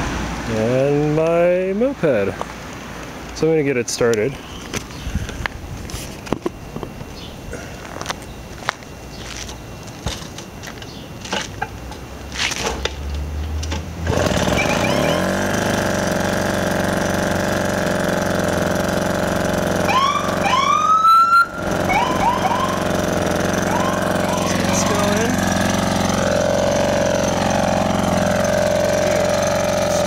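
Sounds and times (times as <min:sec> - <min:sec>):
moped engine starting and running: 0:10.2 - 0:30.0
engine throttle blips: 0:13.1 - 0:30.0.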